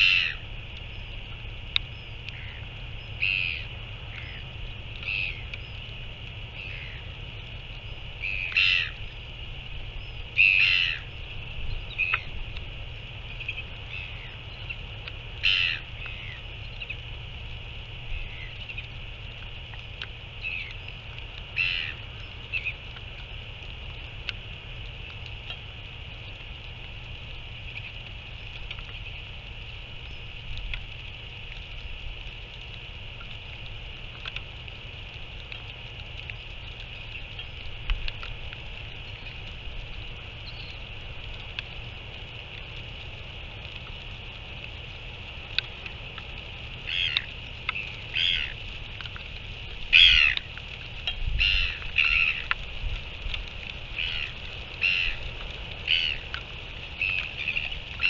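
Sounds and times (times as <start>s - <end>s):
harsh bird calls: 0.0s - 1.2s, 1.8s - 5.9s, 6.5s - 9.2s, 9.9s - 12.4s, 13.2s - 17.0s, 18.1s - 19.0s, 20.4s - 22.8s, 46.8s - 48.6s, 49.9s - 50.5s, 51.4s - 52.6s, 53.9s - 56.3s, 56.9s - 58.0s
low wind rumble: 0.0s - 58.0s
steady high hiss: 0.0s - 58.0s.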